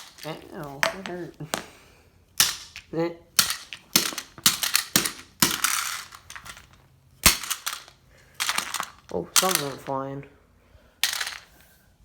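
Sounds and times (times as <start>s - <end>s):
rattling loose plastic parts: 0.0s - 1.6s, 2.4s - 10.0s, 11.0s - 11.5s
hammer smacking plastic toy: 2.4s - 9.9s.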